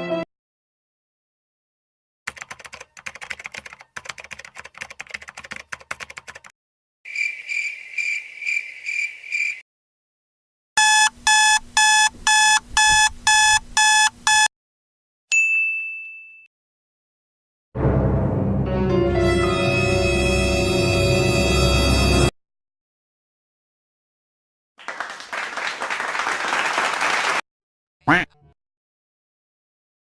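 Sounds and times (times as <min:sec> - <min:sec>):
alarm clock beeping: 0:10.8 - 0:14.5
bright ding: 0:15.3 - 0:16.5.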